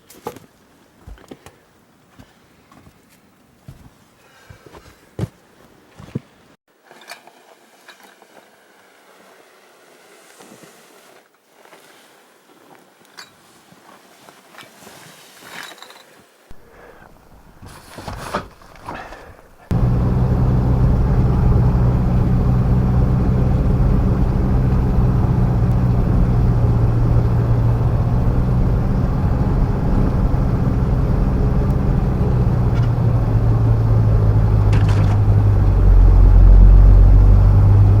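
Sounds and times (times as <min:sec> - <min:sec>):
engine and road drone in cab: 0:19.7 - 0:38.0.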